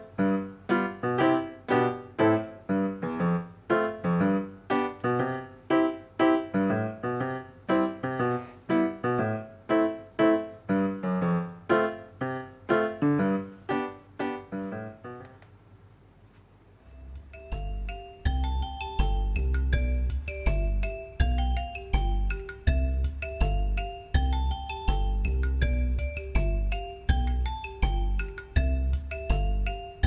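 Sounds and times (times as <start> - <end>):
gentle piano music: 0.0 - 15.4, 16.9 - 30.0.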